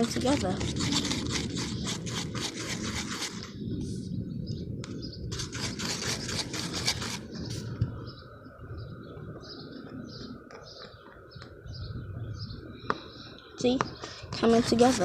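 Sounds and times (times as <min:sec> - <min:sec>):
slime stirred with scraping: 0:00.0 - 0:03.4.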